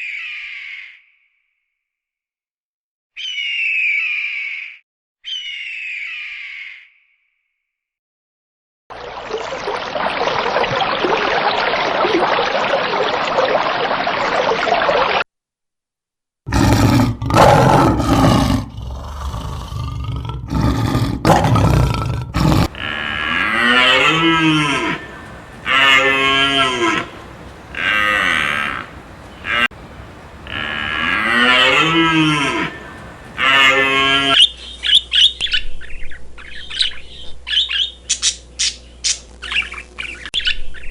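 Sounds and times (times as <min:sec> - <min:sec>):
loud rough noises: 0:20.8 - 0:34.4
cows mooing: 0:22.4 - 0:34.4
steady hiss: 0:22.6 - 0:34.4.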